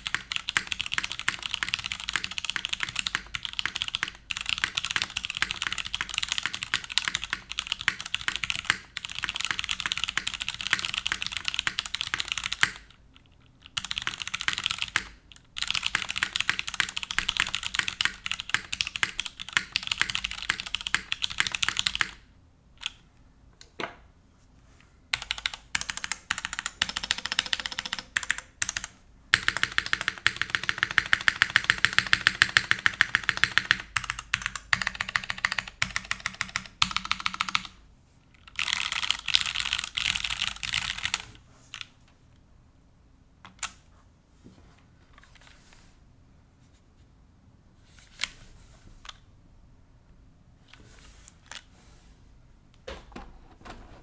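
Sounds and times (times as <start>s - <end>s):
mechanical keyboard typing: 0.0s - 22.2s, 25.1s - 37.8s, 38.5s - 41.9s, 52.9s - 54.0s.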